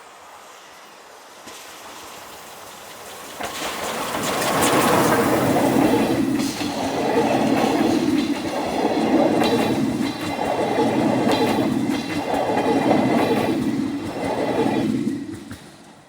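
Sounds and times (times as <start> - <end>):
train wheels clattering over rails: 1.4 - 16.0.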